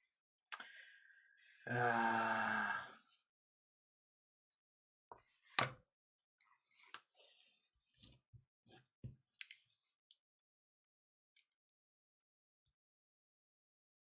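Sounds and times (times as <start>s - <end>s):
man groaning sigh: 1.7s - 2.9s.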